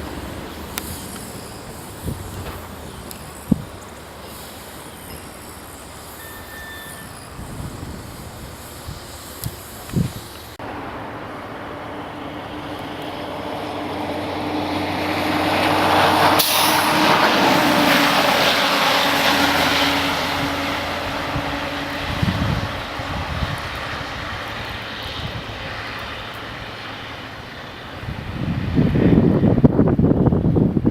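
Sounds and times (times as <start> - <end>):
vehicle driving past: 10.4 - 29.2.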